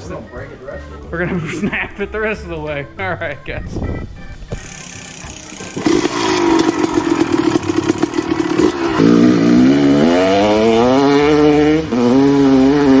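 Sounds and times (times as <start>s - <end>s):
engine accelerating: 4.2s - 13.0s.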